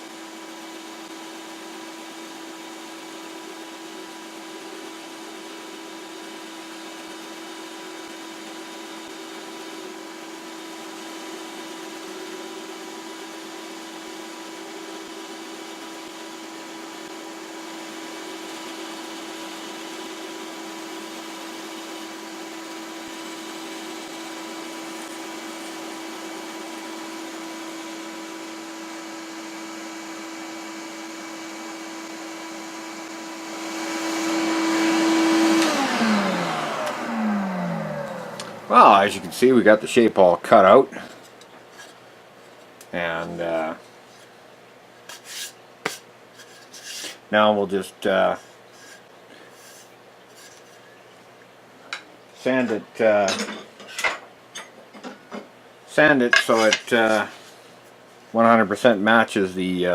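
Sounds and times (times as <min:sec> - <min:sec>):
shop vacuum rushing: 0:04.2 - 0:41.2
bandsaw humming: 0:08.0 - 0:41.9.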